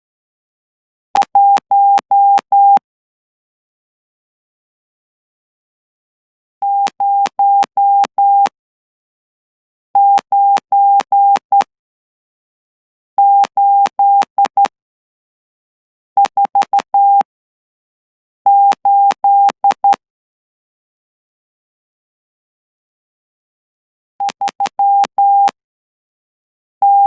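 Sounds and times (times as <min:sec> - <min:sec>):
morse code beeps: 0:01.2 - 0:02.8, 0:06.6 - 0:08.5, 0:10.0 - 0:11.7, 0:16.2 - 0:17.3, 0:18.5 - 0:20.0, 0:24.2 - 0:25.6.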